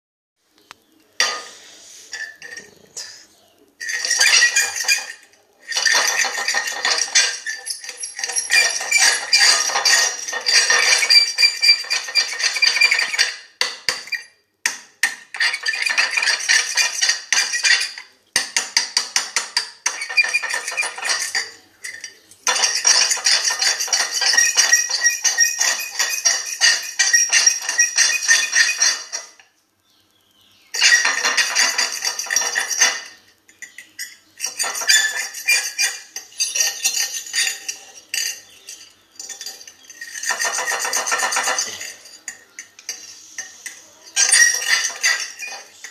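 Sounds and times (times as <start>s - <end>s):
fork scraping across a plate: 1.2s - 13.2s, 39.4s - 45.9s.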